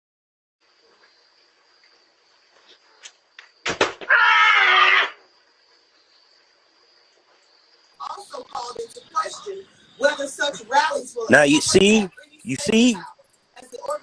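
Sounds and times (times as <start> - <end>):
sharp thuds of falling: 3.4 - 4.2.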